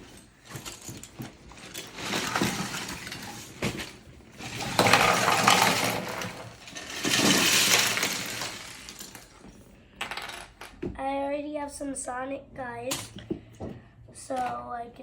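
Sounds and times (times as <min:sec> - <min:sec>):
plastic bricks clattering: 0:00.4 - 0:10.8.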